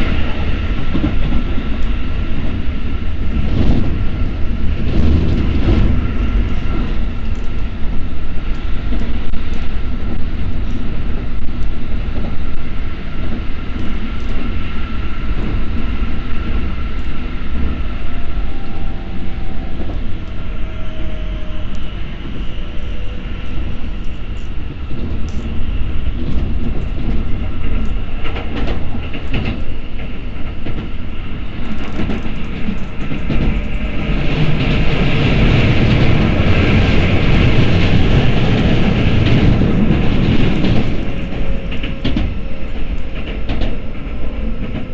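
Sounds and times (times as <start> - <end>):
train wheels rumbling on rails: 0.0 - 44.9
wheels clicking over rail joints: 22.8 - 44.9.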